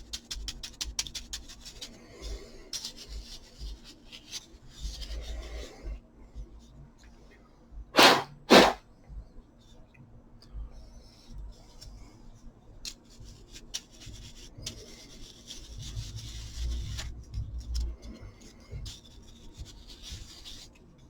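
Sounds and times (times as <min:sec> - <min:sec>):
brush scrubbing a fan: 0:00.0 - 0:06.0, 0:11.1 - 0:21.0.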